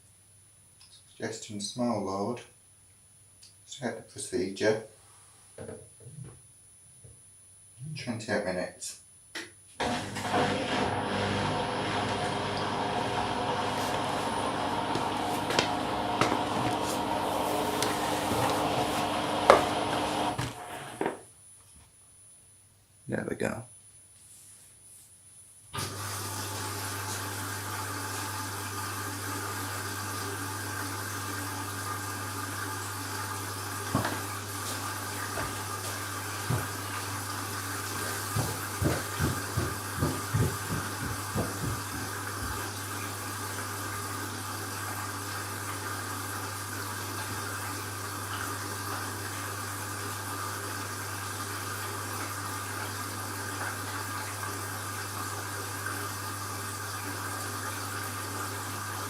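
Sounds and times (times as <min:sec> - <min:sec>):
inlet valve mains hum: 0:09.3 - 0:22.0
water rushing into washing machine: 0:09.8 - 0:21.0, 0:25.8 - 0:59.0
sharp knocks: 0:38.4 - 0:42.1.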